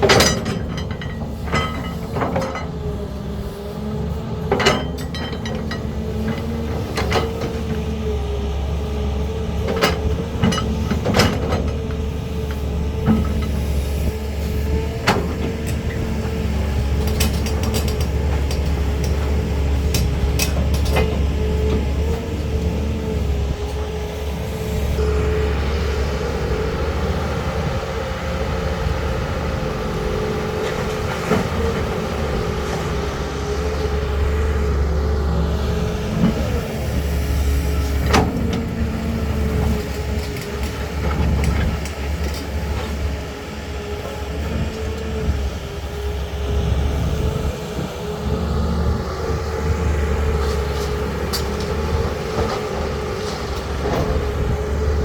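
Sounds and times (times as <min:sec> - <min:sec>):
metallic knocks and clanks: 0:00.0 - 0:02.8, 0:04.5 - 0:07.5, 0:16.8 - 0:21.8
excavator diesel engine running: 0:00.0 - 0:55.0.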